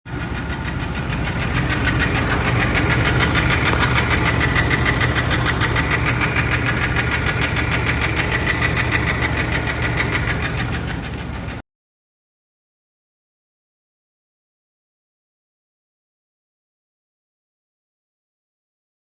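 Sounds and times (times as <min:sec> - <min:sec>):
engine running with rapid knock: 0:00.1 - 0:11.6.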